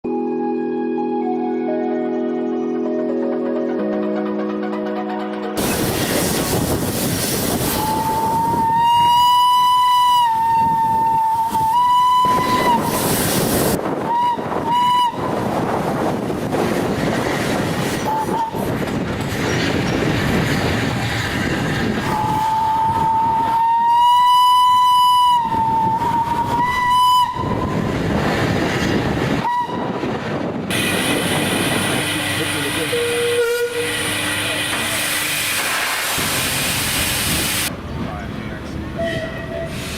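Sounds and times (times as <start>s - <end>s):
passing train running noise: 0.1s - 39.9s
train horn blasts: 7.7s - 13.2s, 14.0s - 15.5s, 22.1s - 27.9s, 29.4s - 30.2s, 32.0s - 35.4s, 39.0s - 39.9s.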